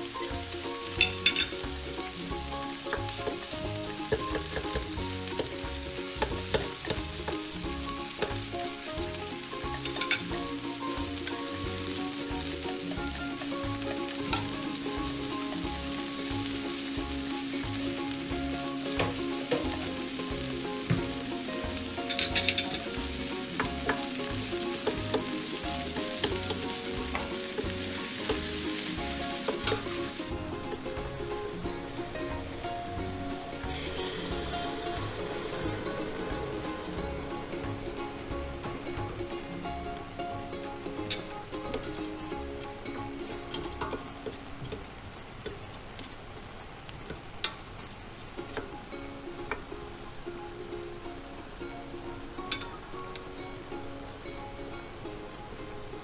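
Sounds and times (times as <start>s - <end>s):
food sizzling in a pan: 0.0s - 56.0s
utensil clicking against pan: 2.8s - 8.6s.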